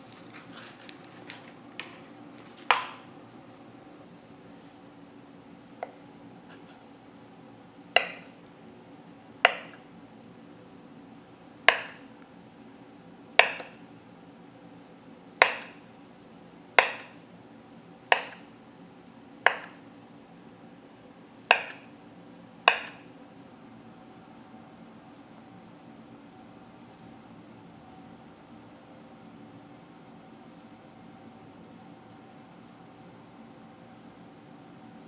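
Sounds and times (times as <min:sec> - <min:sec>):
knife chopping on cutting board: 0:00.3 - 0:03.1, 0:07.9 - 0:08.4, 0:09.4 - 0:09.8, 0:11.6 - 0:12.1, 0:13.4 - 0:13.8, 0:15.4 - 0:15.9, 0:16.8 - 0:17.2, 0:18.1 - 0:18.5, 0:19.4 - 0:19.8, 0:21.5 - 0:21.9, 0:22.7 - 0:23.1.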